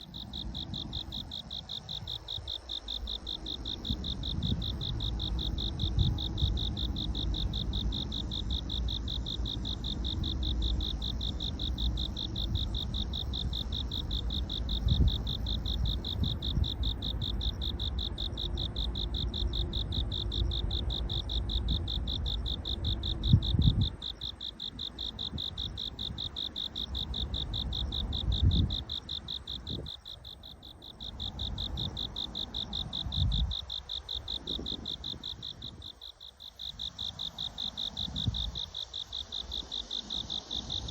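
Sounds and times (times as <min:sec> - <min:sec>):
crickets chirping: 0:00.0 - 0:40.9.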